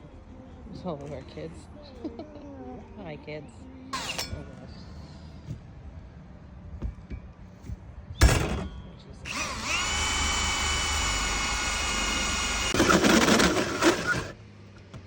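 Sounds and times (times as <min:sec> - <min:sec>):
power drill whining and grinding: 0:09.2 - 0:14.4.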